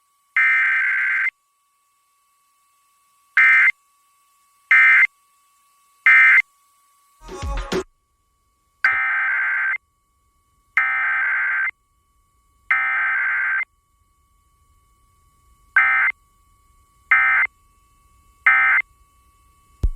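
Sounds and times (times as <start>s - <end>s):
faint steady tone: 0.0s - 19.9s
screechy digital data bursts: 0.3s - 1.4s, 2.4s - 6.5s, 8.8s - 9.9s, 10.7s - 11.8s, 12.6s - 19.8s.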